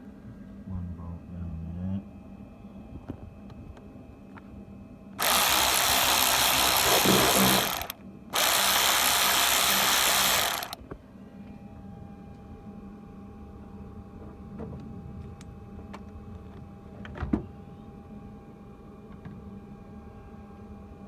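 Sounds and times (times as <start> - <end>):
power tool hissing: 5.2 - 10.8.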